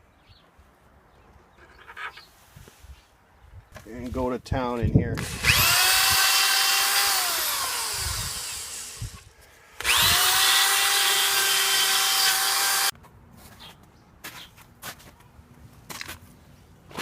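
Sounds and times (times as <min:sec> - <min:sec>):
power tool whining: 0:05.2 - 0:12.9.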